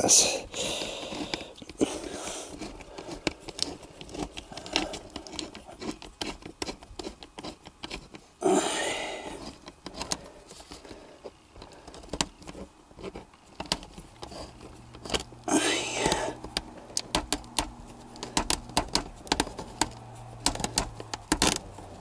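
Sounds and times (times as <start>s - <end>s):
hands handling metal hose clamp: 11.6s - 22.0s.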